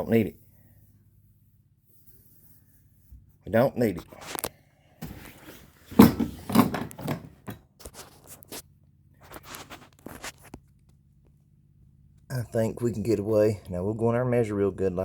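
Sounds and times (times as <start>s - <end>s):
scraping and rustling handling: 4.0s - 11.3s.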